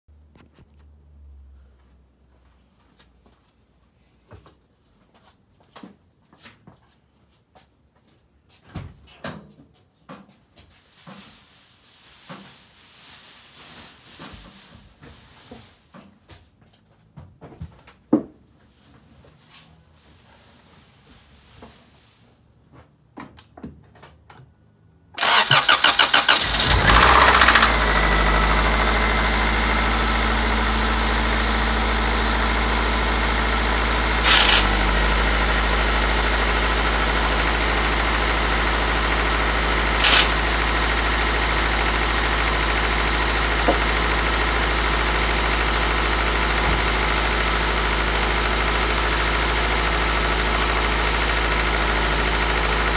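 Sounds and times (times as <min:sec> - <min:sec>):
car engine starter cranking: 0:25.2 - 0:29.6, 0:33.6 - 0:35.5, 0:39.7 - 0:41.0
car engine idling: 0:25.2 - 0:52.9.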